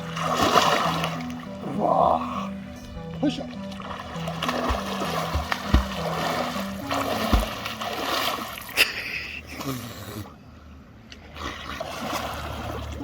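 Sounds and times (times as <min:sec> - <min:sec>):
water splashing in a lake: 0:00.0 - 0:02.5, 0:03.3 - 0:10.0, 0:11.2 - 0:13.0
low music melody: 0:00.0 - 0:08.7.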